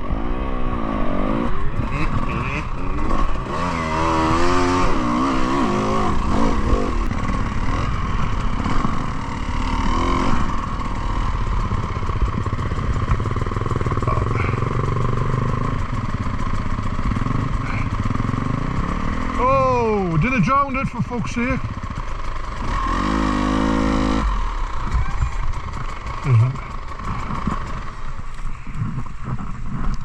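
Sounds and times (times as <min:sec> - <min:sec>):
motorcycle engine revving: 0:00.0 - 0:30.0.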